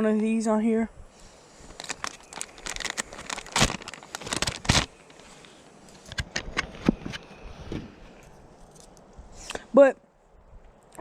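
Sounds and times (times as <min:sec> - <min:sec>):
plastic packaging crinkling: 0:01.6 - 0:05.4.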